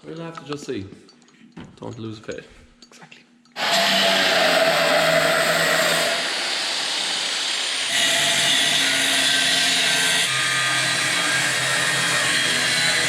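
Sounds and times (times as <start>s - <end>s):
power tool cutting or grinding: 3.6s - 13.0s.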